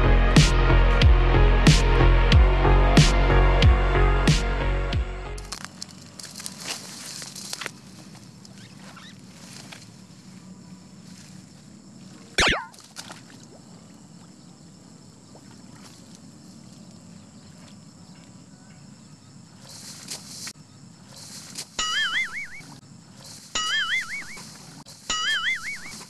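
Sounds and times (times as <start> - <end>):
outdoor background noise: 5.2 - 26.0
quick falling pitch sweep: 12.4 - 12.8.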